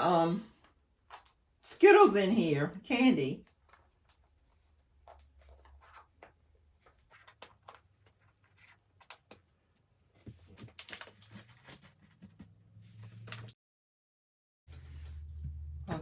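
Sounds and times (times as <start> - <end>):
small items clicking and rustling: 0.6 - 1.5, 3.4 - 13.6.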